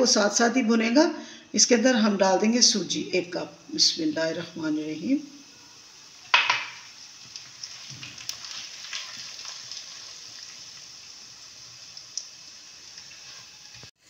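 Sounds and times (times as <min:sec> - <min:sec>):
ghee sizzling in a pan: 0:01.6 - 0:14.0
cardamom seeds crackling: 0:05.9 - 0:14.0
semolina tipped into hot pan: 0:06.3 - 0:07.0.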